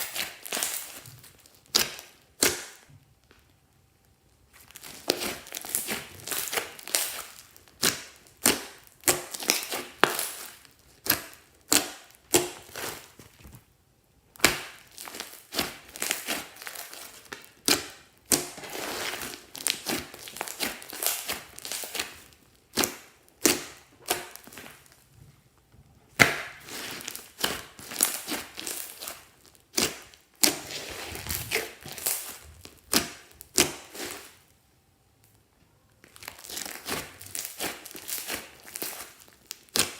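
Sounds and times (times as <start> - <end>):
slime popping and crackling: 0.0 - 3.6, 4.4 - 13.7, 14.3 - 25.0, 26.1 - 34.5, 36.0 - 39.9.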